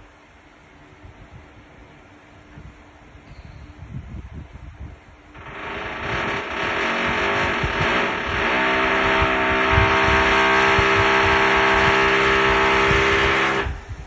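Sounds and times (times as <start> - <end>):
power tool whining through ceiling: 5.4 - 14.0.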